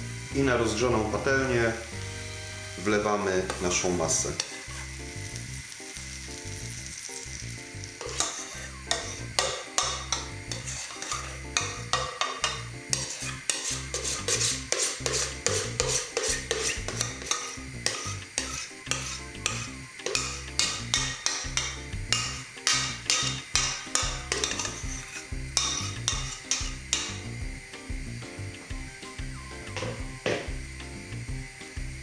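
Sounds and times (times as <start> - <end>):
batter sizzling in a frying pan: 0.0 - 32.0
utensil scraping and tapping pan: 3.3 - 5.0, 8.0 - 27.3, 29.7 - 30.6.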